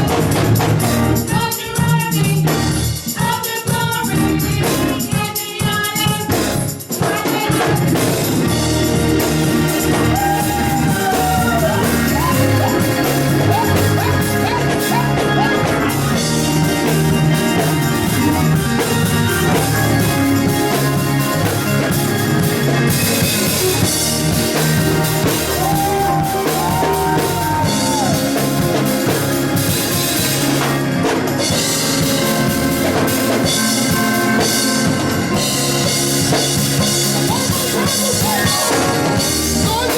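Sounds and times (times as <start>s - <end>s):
drum kit beat: 0.0s - 39.9s
gospel band playing: 0.0s - 39.9s
person singing: 10.0s - 16.1s, 25.4s - 28.5s, 36.8s - 39.9s.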